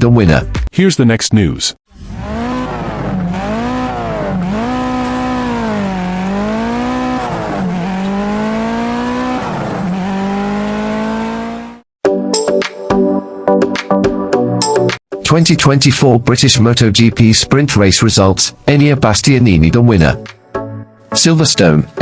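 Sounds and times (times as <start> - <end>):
racing engine revving: 1.9 - 11.9.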